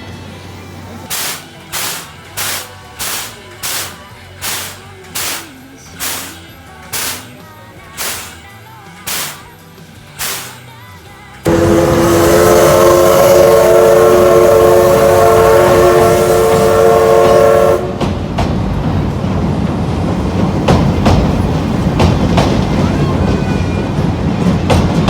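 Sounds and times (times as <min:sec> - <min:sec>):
train rumbling: 0:00.0 - 0:25.0
train whistle blast: 0:01.1 - 0:06.4, 0:07.0 - 0:07.3, 0:08.0 - 0:08.4, 0:09.1 - 0:09.5, 0:10.2 - 0:10.6, 0:11.5 - 0:18.1
wheels clicking over rail joints: 0:01.1 - 0:11.6, 0:18.0 - 0:25.0.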